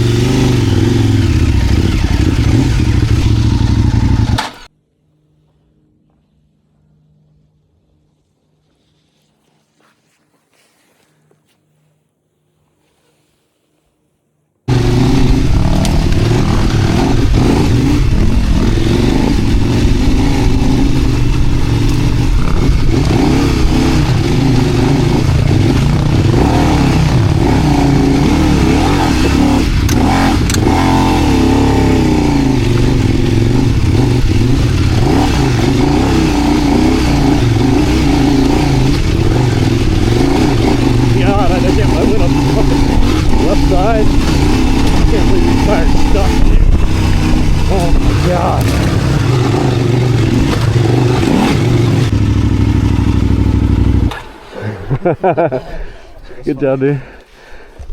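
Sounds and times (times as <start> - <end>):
motorcycle engine revving: 0.0 - 4.7, 14.7 - 55.9
wind and road noise: 0.0 - 4.8, 14.7 - 57.9.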